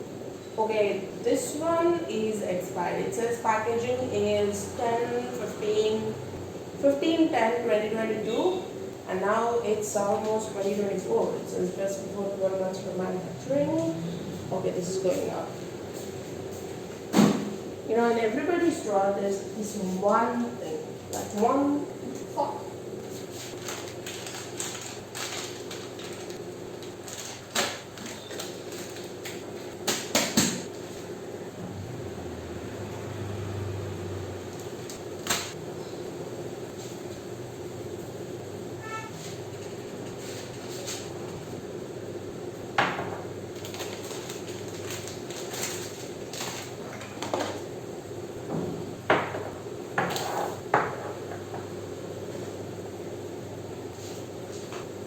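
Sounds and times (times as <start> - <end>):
steady background hum: 0.0 - 55.0.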